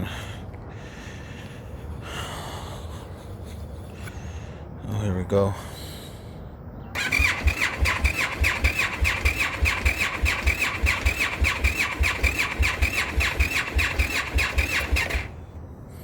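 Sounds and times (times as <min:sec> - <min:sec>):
motorcycle starter cranking engine: 0:07.0 - 0:15.4.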